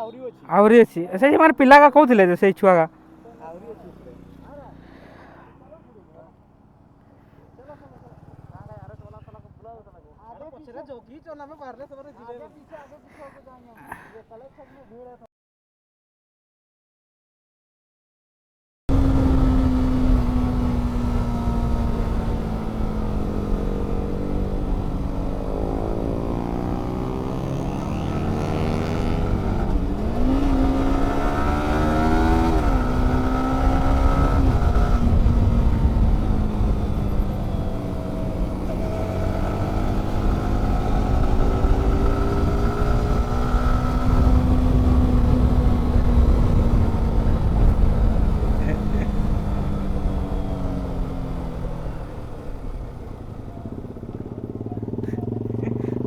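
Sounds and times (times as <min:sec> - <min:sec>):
motorcycle engine revving: 0:02.9 - 0:10.2, 0:18.9 - 0:56.0
wind rumble on microphone: 0:33.7 - 0:39.8, 0:41.3 - 0:50.6.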